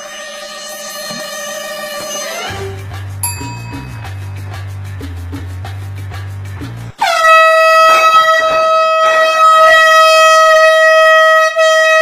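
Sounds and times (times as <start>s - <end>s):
background music with bass: 2.5s - 7.0s
air horn blast: 7.0s - 12.0s.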